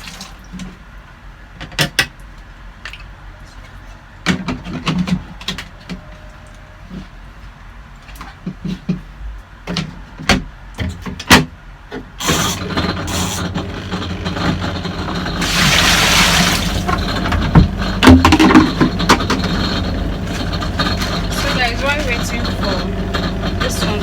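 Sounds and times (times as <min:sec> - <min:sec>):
washing machine motor hum: 0:12.2 - 0:24.0
water churning: 0:12.3 - 0:24.0.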